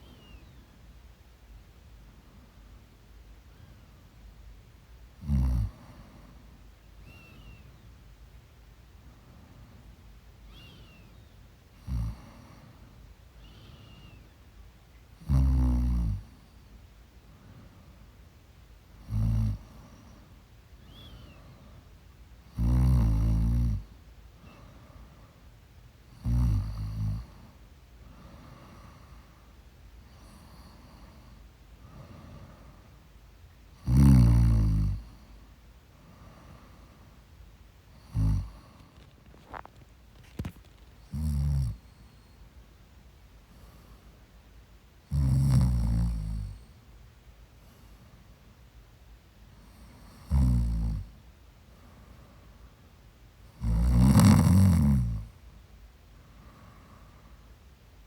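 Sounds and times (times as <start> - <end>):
quiet breathing: 0.0 - 58.0
woman snoring: 26.2 - 27.3, 38.0 - 39.6, 45.1 - 46.5, 50.2 - 51.1, 53.6 - 55.3.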